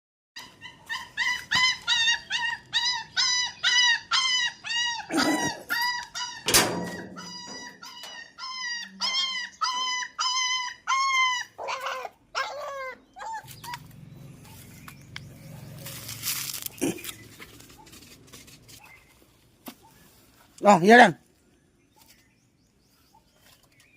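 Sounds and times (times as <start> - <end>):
puppy whining yelps: 0.4 - 13.9.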